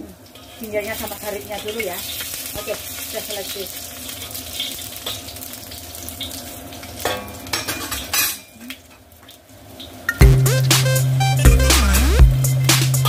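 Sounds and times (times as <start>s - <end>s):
food sizzling in hot oil: 0.0s - 10.2s
spatula clattering in pan: 6.2s - 8.5s
music: 10.2s - 13.0s.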